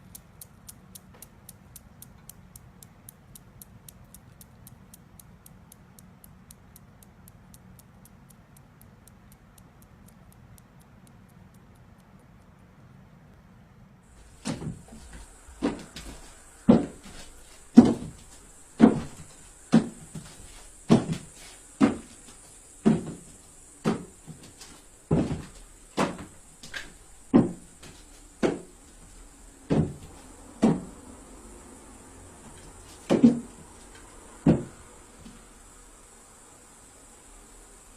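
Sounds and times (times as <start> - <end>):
sharp knocks or bangs: 18.8 - 20.3.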